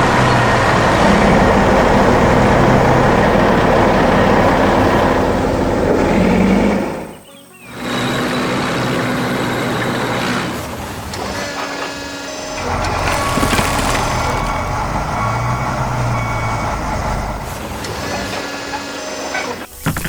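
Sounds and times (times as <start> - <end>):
heavy vehicle engine running: 0.0 - 20.0
reversing beeper: 11.6 - 19.7.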